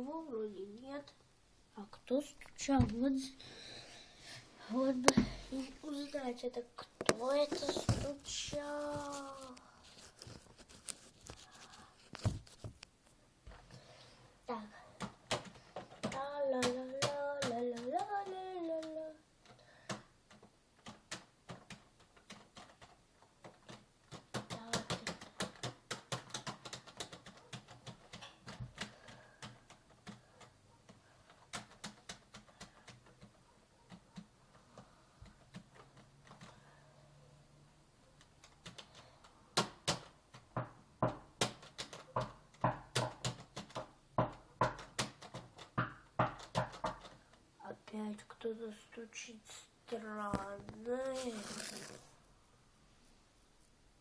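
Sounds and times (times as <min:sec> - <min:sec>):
rapid taps on hard surface: 0:39.6 - 0:47.2.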